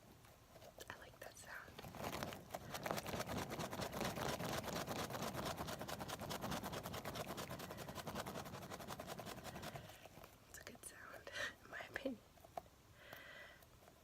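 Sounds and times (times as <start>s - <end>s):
squishy toy sticky crackles: 1.7s - 9.8s.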